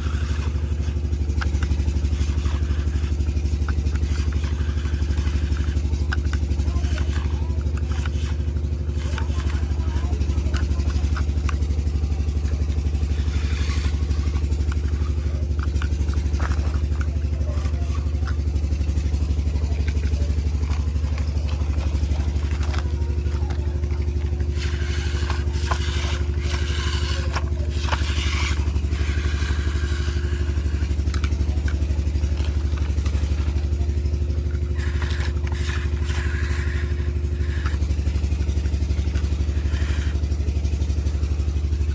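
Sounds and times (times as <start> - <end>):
clatter: 0.0 - 41.9
tractor diesel engine running: 0.0 - 41.9.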